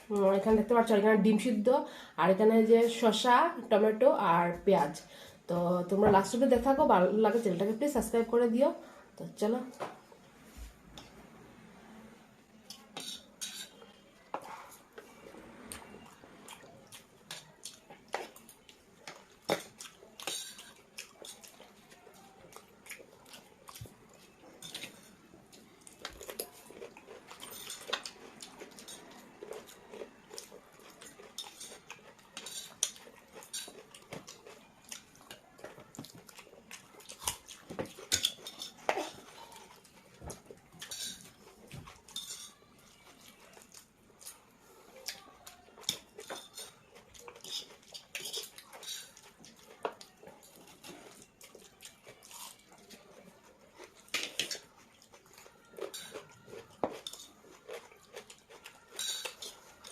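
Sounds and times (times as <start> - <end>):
chewing: 12.6 - 59.9
cutlery clinking on plates: 12.7 - 14.6, 19.4 - 21.5, 37.4 - 39.6, 40.2 - 42.6, 45.8 - 46.8, 55.8 - 57.4, 58.6 - 59.9.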